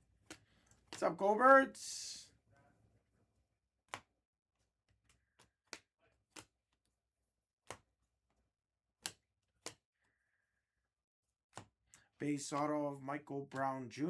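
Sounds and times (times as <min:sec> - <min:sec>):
cards clicking and tapping: 0:00.2 - 0:01.4, 0:03.9 - 0:04.1, 0:04.9 - 0:06.8, 0:07.6 - 0:08.0, 0:09.0 - 0:09.9, 0:11.5 - 0:12.7.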